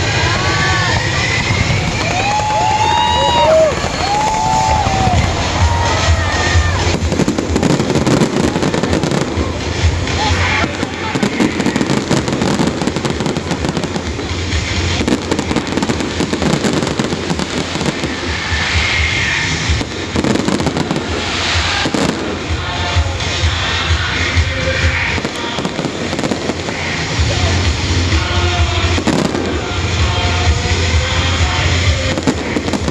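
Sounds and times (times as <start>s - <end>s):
crowd voices: 0.0s - 32.9s
fireworks bangs and crackles: 0.0s - 32.9s
music playing: 0.0s - 32.9s.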